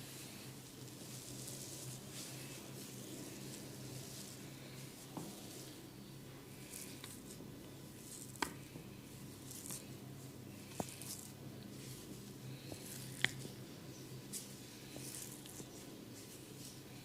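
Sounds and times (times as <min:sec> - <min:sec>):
hair rubbing and scratching: 0:00.0 - 0:05.8, 0:09.0 - 0:13.6, 0:14.3 - 0:17.0.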